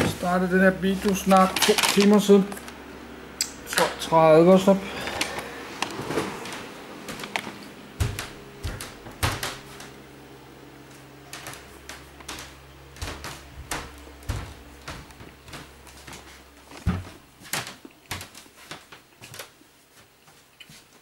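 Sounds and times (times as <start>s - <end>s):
steady low hum: 0.0s - 20.6s.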